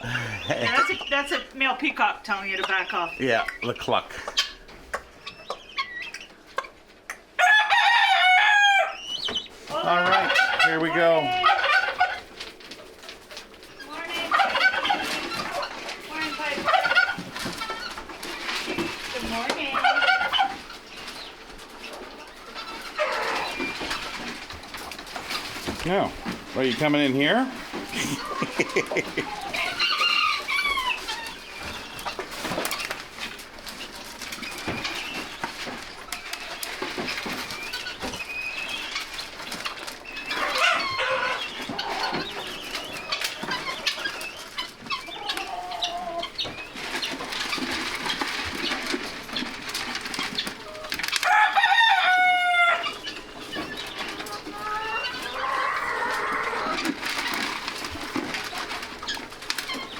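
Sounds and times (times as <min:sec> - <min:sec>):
chickens clucking: 0:00.0 - 0:59.9
rooster crowing: 0:07.4 - 0:09.0, 0:51.2 - 0:53.0.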